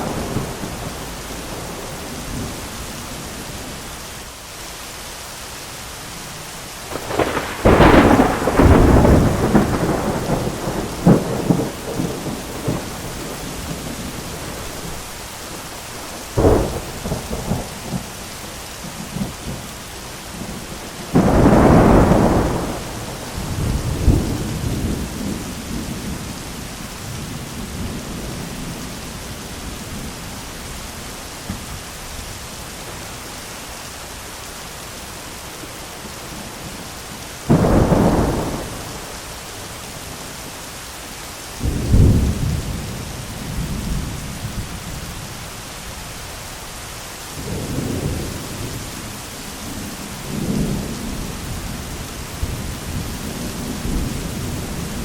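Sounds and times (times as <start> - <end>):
thunderclaps rumbling: 0.0 - 3.7, 6.9 - 15.2, 15.9 - 19.7, 20.3 - 30.8, 37.4 - 40.3, 41.6 - 45.4, 47.4 - 55.0
heavy rain: 0.0 - 55.0.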